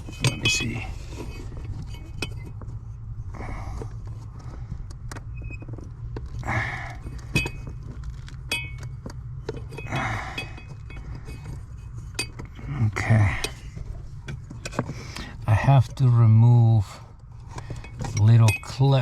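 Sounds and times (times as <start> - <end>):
steady low hum: 0.0 - 19.0
metallic clicks and clinks: 7.0 - 12.5.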